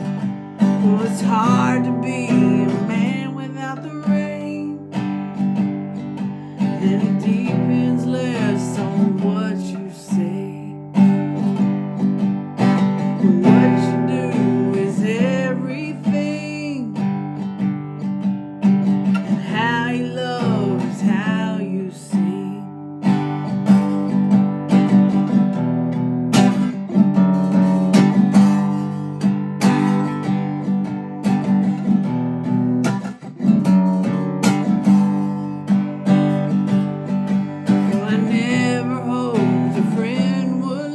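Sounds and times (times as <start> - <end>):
person singing: 0.0 - 11.7, 12.6 - 17.3, 19.1 - 22.9, 34.8 - 40.9
strummed acoustic guitar: 0.0 - 40.9.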